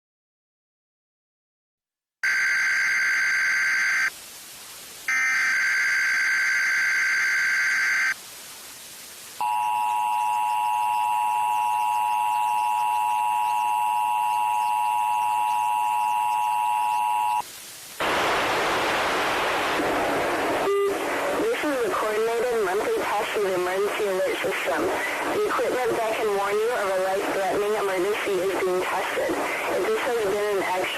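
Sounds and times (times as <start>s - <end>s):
screeching digital data bursts: 5.1s - 8.2s, 9.4s - 17.4s
two-tone attention signal: 9.4s - 17.4s, 20.6s - 21.0s.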